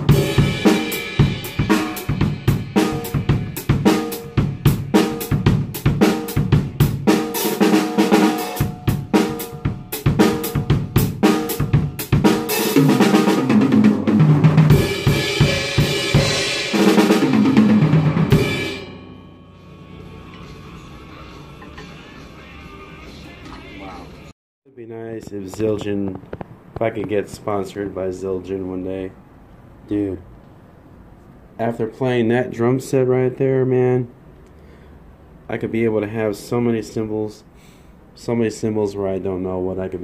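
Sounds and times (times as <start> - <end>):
drum kit groove: 0.0 - 22.4
crash cymbals: 18.1 - 22.7.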